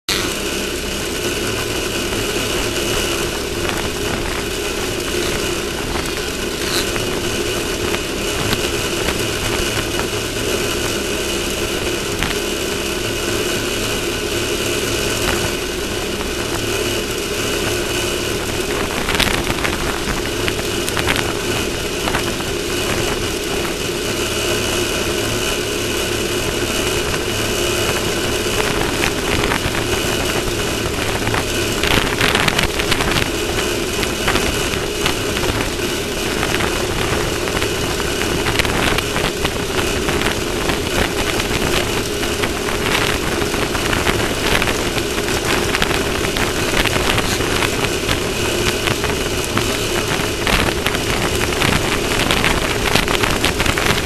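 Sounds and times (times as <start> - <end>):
vehicle engine running steadily: 0.0 - 54.0.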